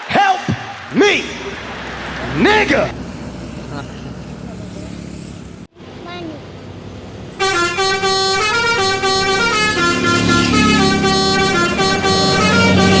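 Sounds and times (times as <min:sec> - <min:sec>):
low rumble: 0:00.9 - 0:05.6
multi-tone bus air horn melody: 0:07.4 - 0:13.0.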